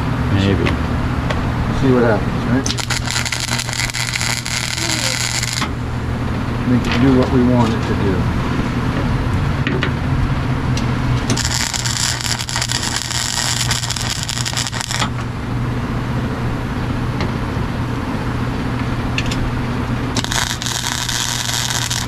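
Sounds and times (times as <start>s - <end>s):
steady low hum: 0.0s - 22.0s
cutting torch crackling hiss: 1.8s - 5.8s, 11.2s - 15.2s, 20.2s - 22.0s.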